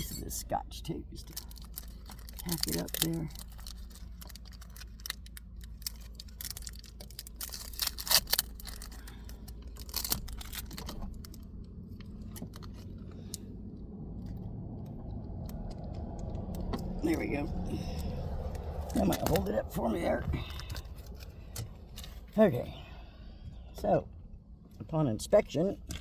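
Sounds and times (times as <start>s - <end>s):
low steady hum: 0.0s - 26.0s
adhesive tape crackling: 1.2s - 13.4s.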